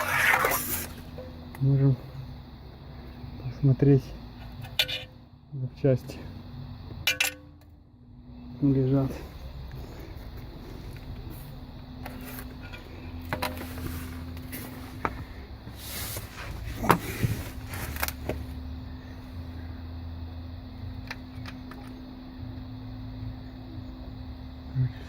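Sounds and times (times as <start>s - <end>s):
steady hum: 0.0s - 25.0s
metal parts clinking: 7.0s - 7.6s.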